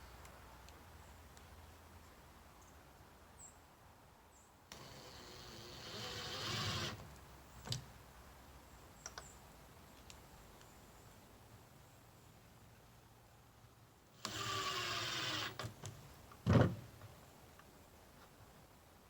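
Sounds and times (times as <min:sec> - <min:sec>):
faint clicks: 0:09.0 - 0:09.3.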